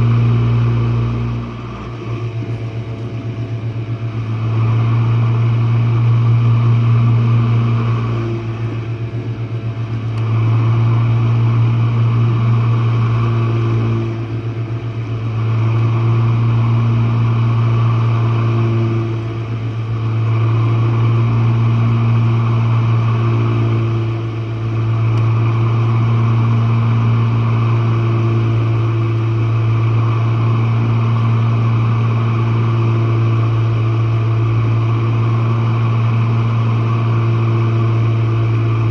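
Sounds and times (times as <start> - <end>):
dishwasher motor hum: 0.0 - 38.9.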